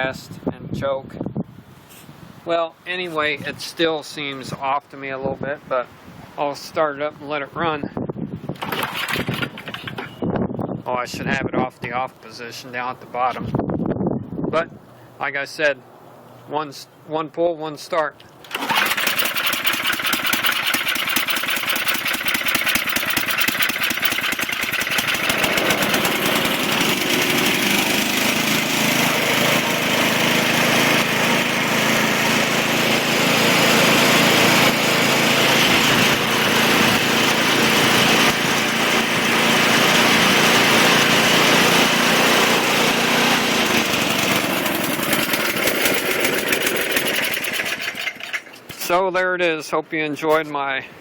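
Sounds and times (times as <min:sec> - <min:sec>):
snowblower engine running: 0:08.6 - 0:10.2, 0:18.4 - 0:48.6.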